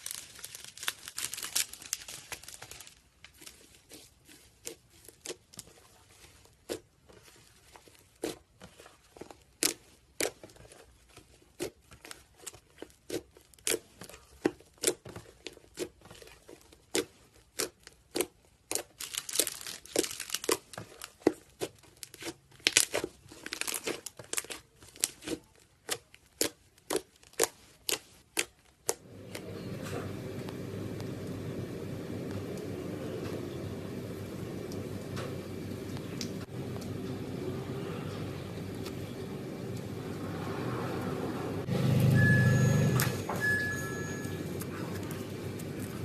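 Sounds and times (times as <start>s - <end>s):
slime popping and crackling: 0.0s - 29.0s.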